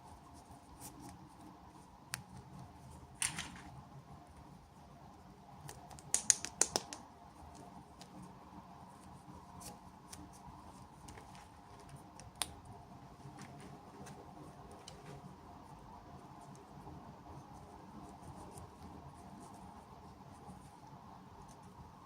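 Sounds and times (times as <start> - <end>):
packaging clicks and snips: 5.6 - 7.0.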